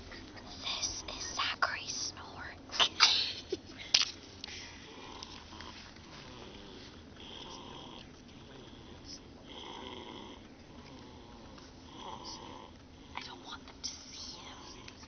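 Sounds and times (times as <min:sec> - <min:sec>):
steady low hum: 0:00.0 - 0:15.0
person snoring: 0:04.6 - 0:13.2.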